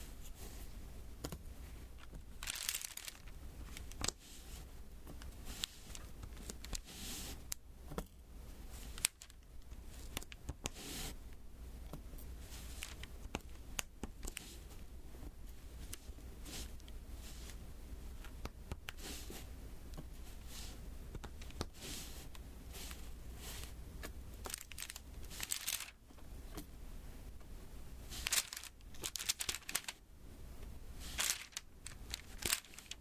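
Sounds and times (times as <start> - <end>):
plastic film crinkling: 2.0 - 4.2, 8.9 - 9.4, 24.4 - 26.0, 28.1 - 30.0, 31.0 - 33.0.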